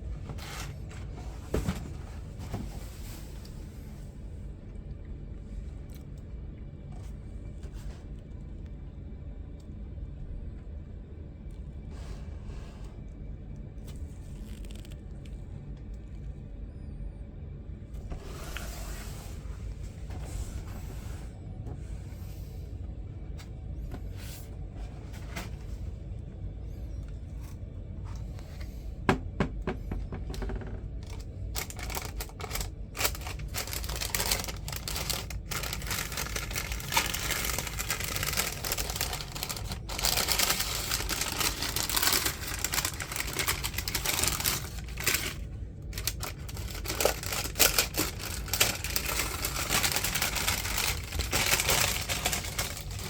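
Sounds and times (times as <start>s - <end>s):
steady low hum: 0.0s - 53.0s
packaging rustling and crinkling: 0.1s - 3.7s, 13.9s - 15.2s, 30.3s - 53.0s.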